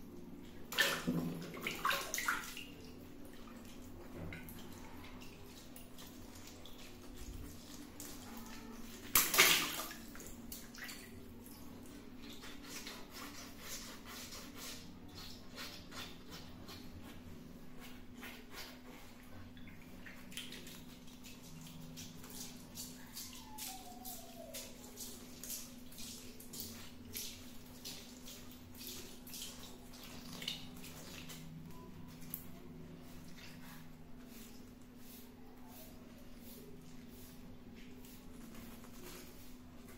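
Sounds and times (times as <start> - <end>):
water dripping: 25.0 - 32.6.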